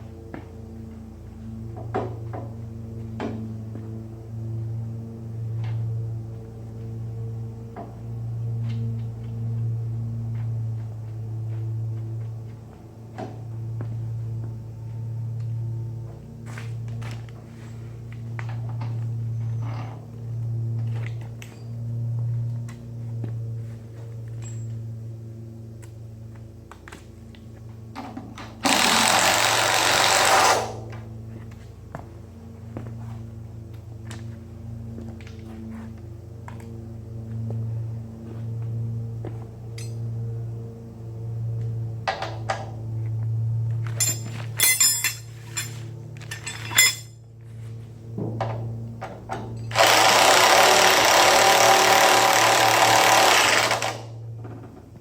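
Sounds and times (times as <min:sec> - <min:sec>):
low electrical hum: 0:00.0 - 0:55.0
metal tools clinking and clanking: 0:24.4 - 0:24.8, 0:39.8 - 0:40.0, 0:43.9 - 0:47.2
power tool running: 0:28.6 - 0:31.0, 0:49.7 - 0:54.2
sharp ringing metal strikes: 0:44.0 - 0:45.7.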